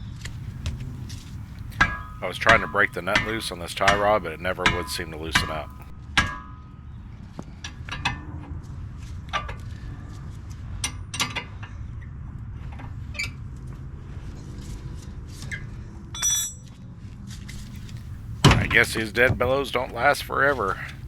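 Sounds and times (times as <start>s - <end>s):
hand tools clinking on metal: 0.3s - 5.9s, 17.6s - 21.0s
ringing metal strike: 0.3s - 5.9s.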